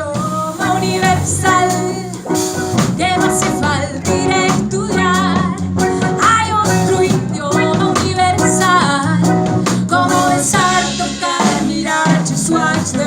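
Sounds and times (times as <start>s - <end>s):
pop song with guitar and drums: 0.0s - 13.0s.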